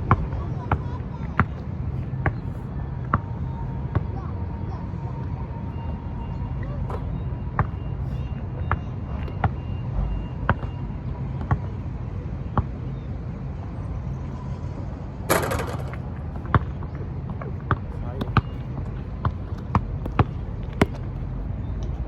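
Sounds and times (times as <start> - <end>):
basketball bouncing: 15.3 - 16.8, 19.2 - 21.2.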